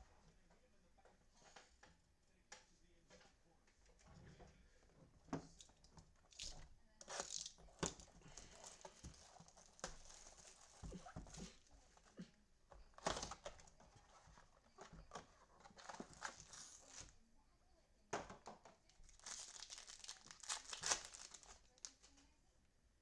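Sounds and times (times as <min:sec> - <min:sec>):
card pack wrappers crinkling: 0:06.3 - 0:10.9, 0:19.0 - 0:22.1.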